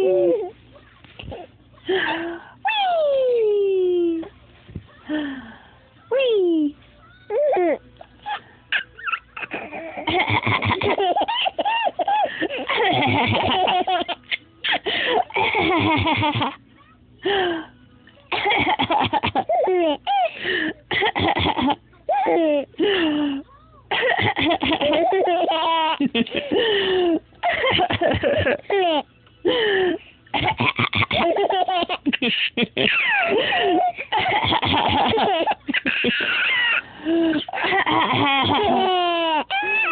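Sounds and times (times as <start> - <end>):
baby laughing: 7.3 - 16.6, 24.0 - 26.6, 30.3 - 39.9
woman coughing: 14.7 - 15.9, 18.3 - 20.3, 20.9 - 22.4, 23.9 - 25.2, 27.5 - 28.6, 32.4 - 36.8, 37.4 - 38.8
baby laughing and squealing: 32.9 - 34.4, 35.1 - 36.8, 37.5 - 39.9.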